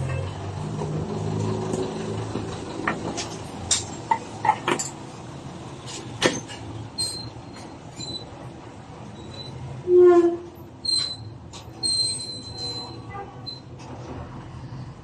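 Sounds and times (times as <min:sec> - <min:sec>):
parts and tools clicking and knocking: 0:01.3 - 0:08.0.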